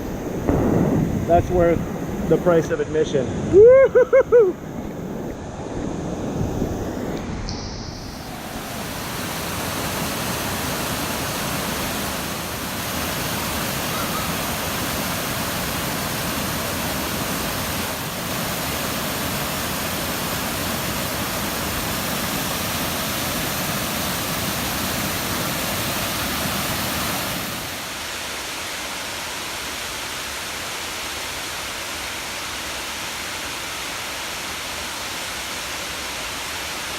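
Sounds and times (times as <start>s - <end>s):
waterfall rushing: 8.0s - 36.9s.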